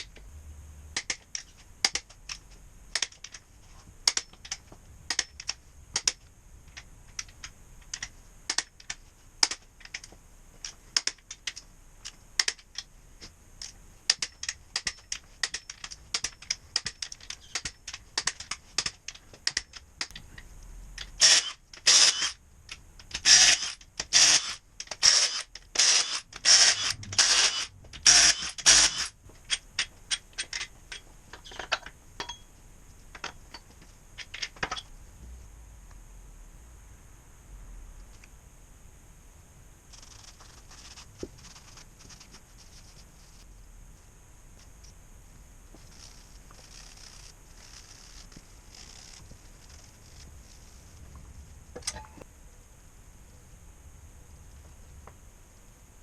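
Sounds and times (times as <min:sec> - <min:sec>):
hand tools clicking on metal parts: 0:01.0 - 0:03.4, 0:04.0 - 0:12.9, 0:13.6 - 0:20.2, 0:21.0 - 0:32.4
rasping ratchet strokes: 0:21.0 - 0:22.4, 0:23.1 - 0:30.7, 0:45.8 - 0:50.9.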